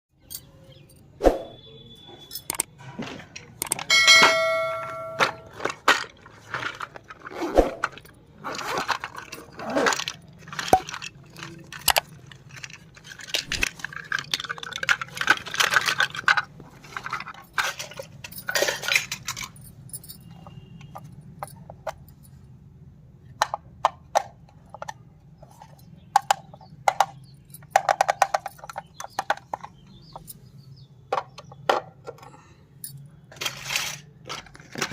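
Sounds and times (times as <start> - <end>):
toy kitchen pieces clicking and clinking: 0.1 - 22.4, 23.2 - 34.9
ringing clink: 3.9 - 5.5.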